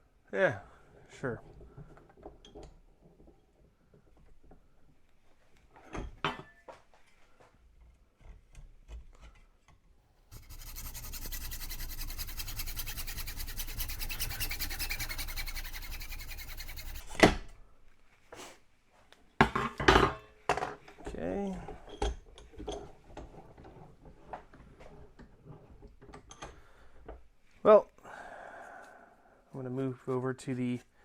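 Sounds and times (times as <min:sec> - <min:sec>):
power tool cutting plastic: 0:10.4 - 0:17.2.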